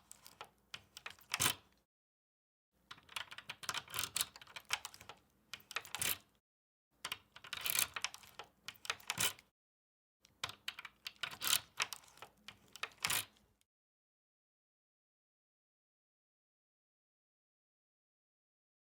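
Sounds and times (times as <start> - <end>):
key turning in door lock: 2.9 - 6.2, 7.0 - 9.4, 10.3 - 13.4
small metallic clicks and rattles: 7.0 - 9.4, 10.3 - 13.4.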